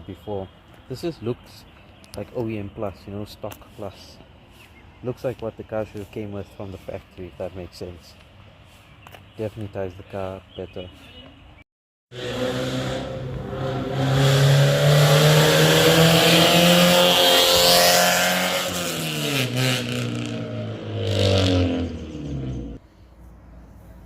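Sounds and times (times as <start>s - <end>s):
car revving driving past: 12.1s - 22.8s.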